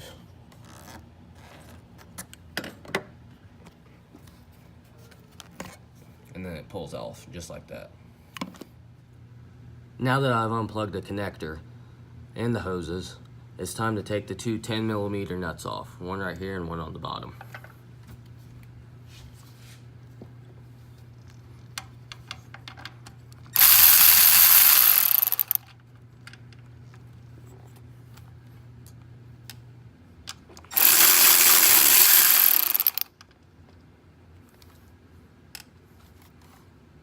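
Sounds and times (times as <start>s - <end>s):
ratchet ratcheting: 23.6s - 25.6s, 30.7s - 33.1s
socket and nuts clicking: 23.6s - 25.6s.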